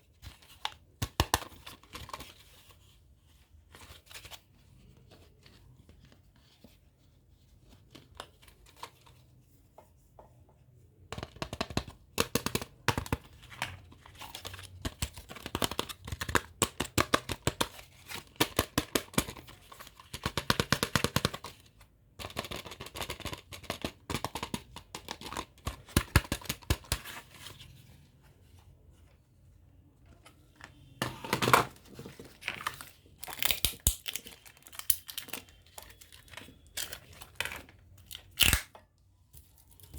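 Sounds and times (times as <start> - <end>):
packaging crinkling and tearing: 32.2 - 38.7.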